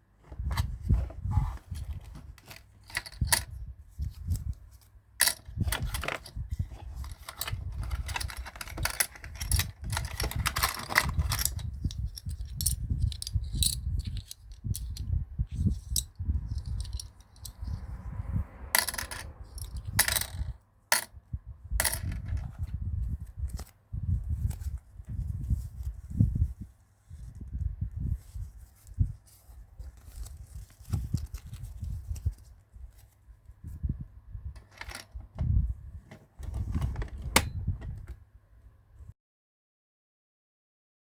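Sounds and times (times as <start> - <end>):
plastic toy pieces clicking: 7.1 - 15.0.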